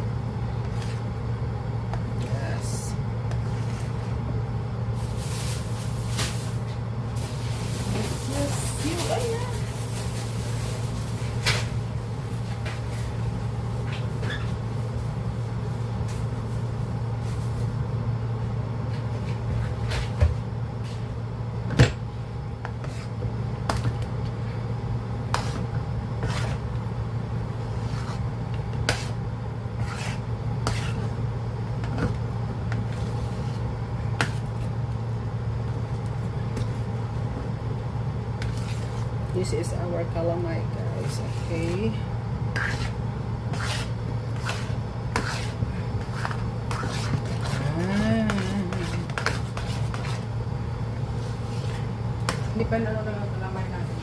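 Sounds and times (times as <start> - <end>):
spoon scraping a cooking pot: 42.6 - 50.2.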